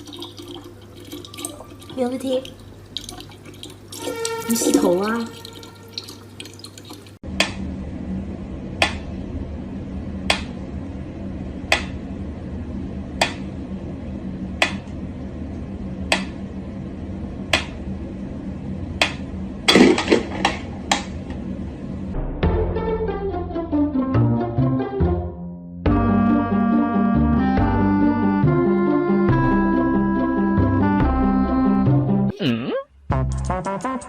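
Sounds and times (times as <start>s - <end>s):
steady low hum: 7.1s - 22.4s.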